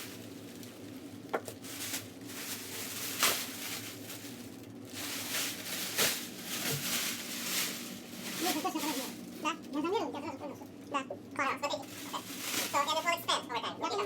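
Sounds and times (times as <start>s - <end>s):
rustling of wrapping: 0.0s - 9.7s, 11.7s - 13.3s
steady low hum: 0.0s - 14.0s.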